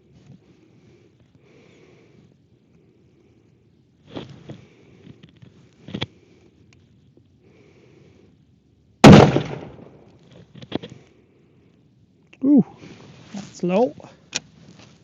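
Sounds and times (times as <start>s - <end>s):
rifle shot: 9.0s - 10.0s.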